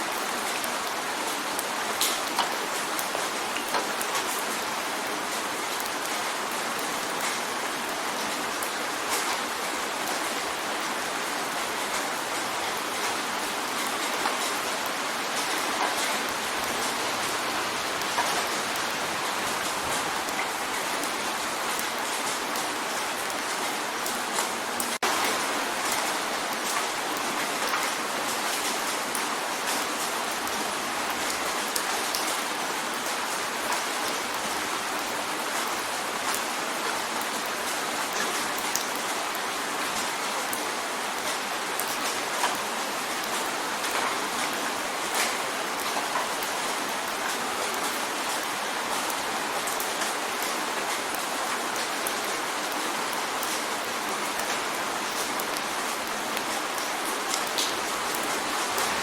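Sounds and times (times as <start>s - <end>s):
rain drumming on window: 0.1s - 59.0s.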